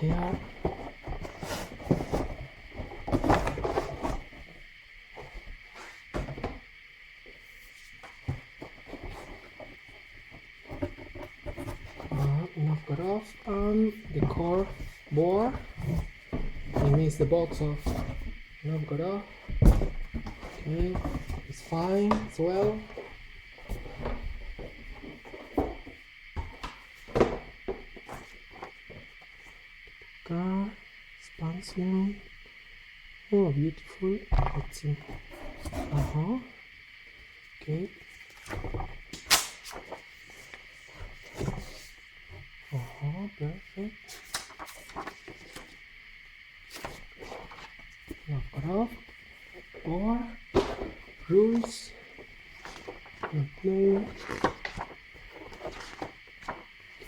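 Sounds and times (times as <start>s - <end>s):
cardboard boxes rustling and knocking: 0.0s - 6.7s, 7.4s - 18.6s, 19.2s - 29.2s, 46.8s - 57.0s
faint high-pitched hum: 0.0s - 57.0s.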